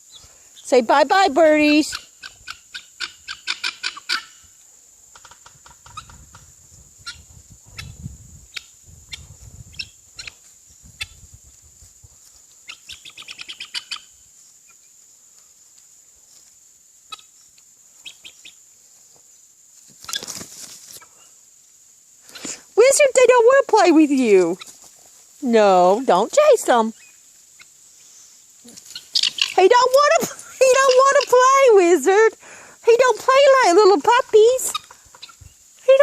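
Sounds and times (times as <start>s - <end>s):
fowl clucking: 1.9s - 4.4s, 12.7s - 14.1s, 28.7s - 31.5s, 34.3s - 35.4s.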